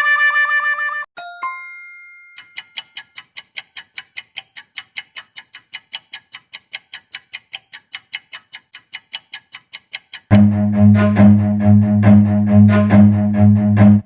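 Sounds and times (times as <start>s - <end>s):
two-stroke chime: 1.2s - 3.0s
fast clock ticking: 2.4s - 10.5s.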